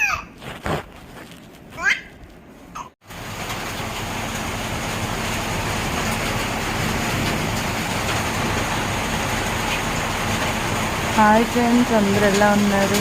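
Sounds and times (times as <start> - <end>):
heavy rain pouring: 3.0 - 13.0.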